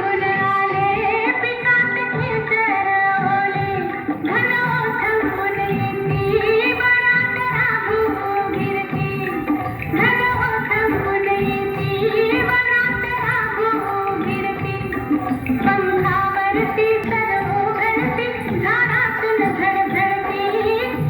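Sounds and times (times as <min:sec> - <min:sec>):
indian-style instrumental music: 0:00.0 - 0:21.0
woman singing: 0:00.0 - 0:21.0.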